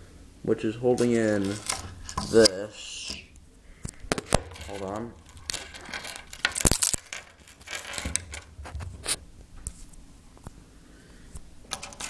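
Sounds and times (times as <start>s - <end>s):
plastic clicks and rattles: 11.7s - 12.0s.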